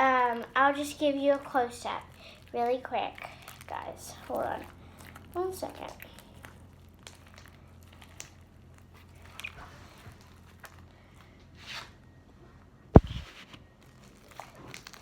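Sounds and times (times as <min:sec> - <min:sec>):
faint handling rustles and clicks: 0:03.2 - 0:15.0
sharp knock: 0:13.0 - 0:13.2.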